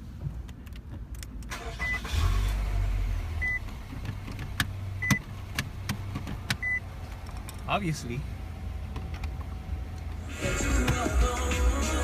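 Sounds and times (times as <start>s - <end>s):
car warning chime beeping: 1.6s - 2.2s, 3.4s - 3.7s, 5.0s - 5.2s, 6.6s - 6.9s.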